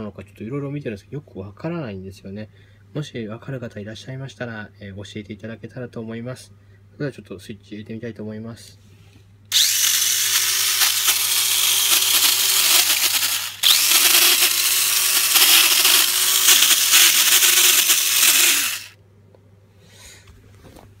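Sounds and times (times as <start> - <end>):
small electric motor whirring: 9.5 - 19.0.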